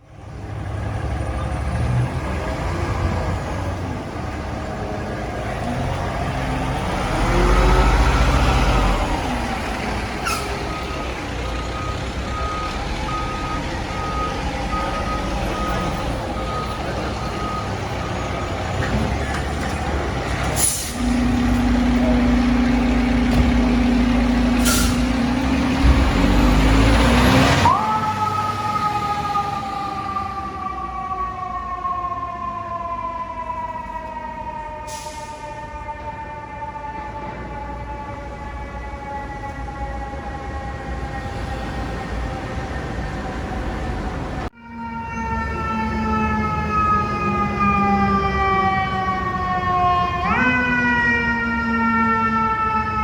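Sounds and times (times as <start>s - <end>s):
fire truck engine running: 0.0s - 53.0s
siren: 0.0s - 53.0s
reversing beeper: 6.5s - 30.4s, 44.7s - 48.2s
air brakes hissing: 10.2s - 11.0s, 20.4s - 21.2s, 24.5s - 25.3s, 34.8s - 35.7s.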